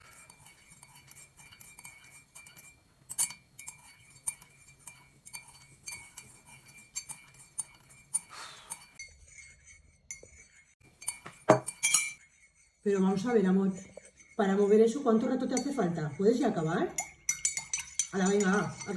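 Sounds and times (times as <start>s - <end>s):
spoon clinking in glass: 0.0s - 9.0s, 10.9s - 12.2s, 17.0s - 18.9s
glass ringing faintly: 11.1s - 12.2s.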